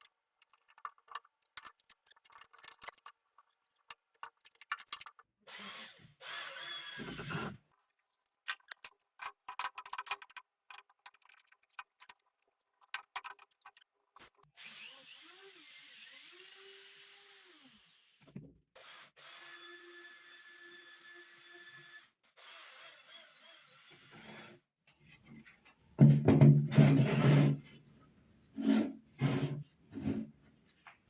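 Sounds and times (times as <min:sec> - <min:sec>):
power drill running: 0:05.5 - 0:07.6, 0:14.6 - 0:18.2, 0:18.8 - 0:24.5.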